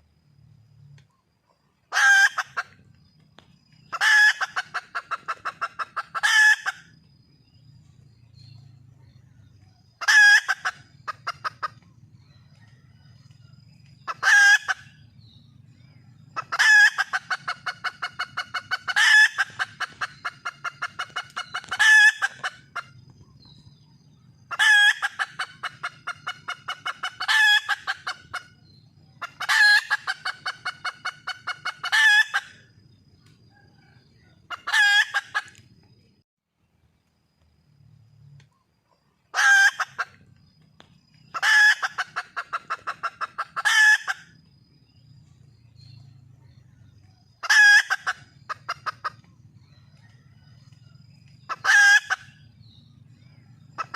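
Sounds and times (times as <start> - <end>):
hen calling and clucking: 1.8 - 7.1, 9.0 - 32.8, 33.5 - 35.8, 38.5 - 40.4, 41.2 - 44.4, 46.3 - 53.9.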